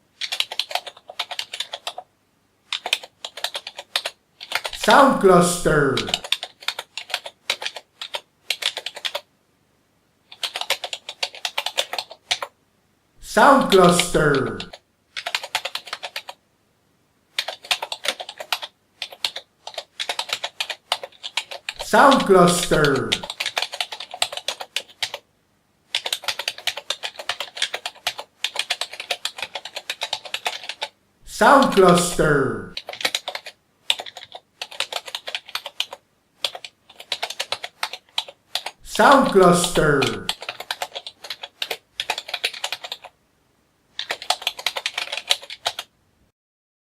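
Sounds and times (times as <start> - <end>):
typing on computer keyboard: 0.2 - 2.1, 2.7 - 4.8, 6.0 - 9.3, 10.3 - 12.6, 14.3 - 16.4, 17.3 - 25.3, 25.9 - 31.0, 32.7 - 43.2, 44.0 - 45.9.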